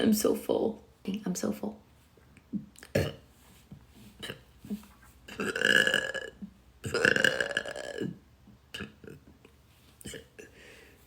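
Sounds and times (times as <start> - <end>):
woman burping: 2.6 - 3.3, 4.2 - 4.5, 5.3 - 9.3.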